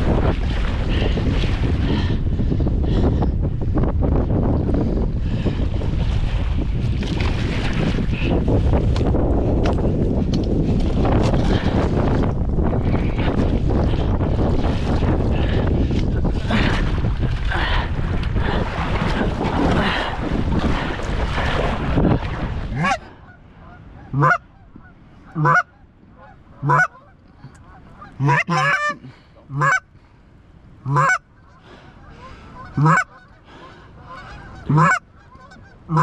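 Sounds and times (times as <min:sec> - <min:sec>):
wind buffeting microphone: 0:00.0 - 0:29.8
goose honks: 0:22.7 - 0:23.0, 0:23.6 - 0:29.8, 0:30.8 - 0:31.2, 0:32.2 - 0:33.4, 0:34.0 - 0:36.0.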